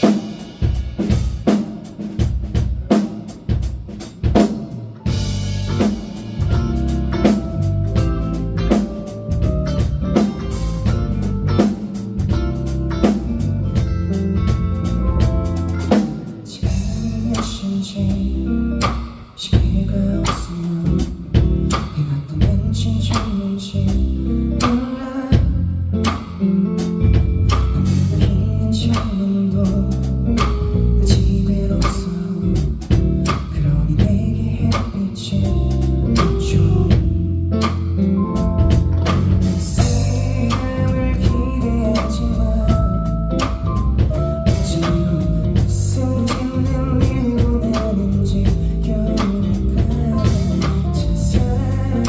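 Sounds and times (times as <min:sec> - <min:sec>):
drum kit hits: 0:00.0 - 0:18.2, 0:25.4 - 0:52.0
guitar chords: 0:05.0 - 0:20.3, 0:35.5 - 0:52.0.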